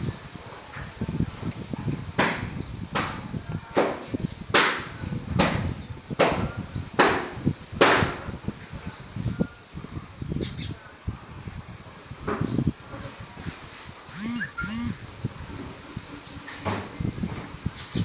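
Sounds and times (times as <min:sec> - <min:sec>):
faint high chirps: 0:14.1 - 0:15.1.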